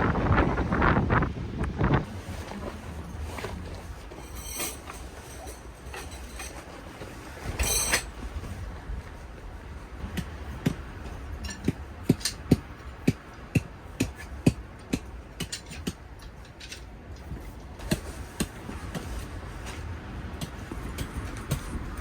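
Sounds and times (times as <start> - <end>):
wind rumble on microphone: 0.0 - 4.2, 4.9 - 22.0.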